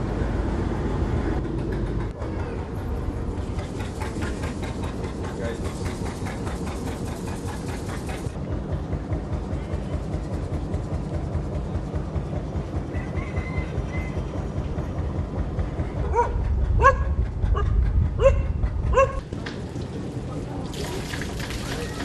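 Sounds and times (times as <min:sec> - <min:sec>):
steady low rumble: 0:13.7 - 0:22.0
dog barking: 0:16.0 - 0:19.2.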